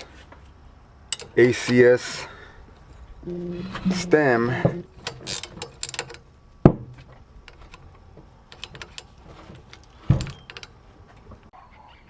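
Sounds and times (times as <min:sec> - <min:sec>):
metal clicks of wrench and bike parts: 0:09.8 - 0:10.8.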